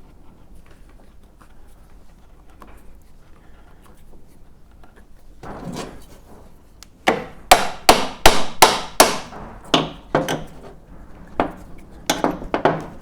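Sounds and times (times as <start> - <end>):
hammer strikes: 6.8 - 13.0.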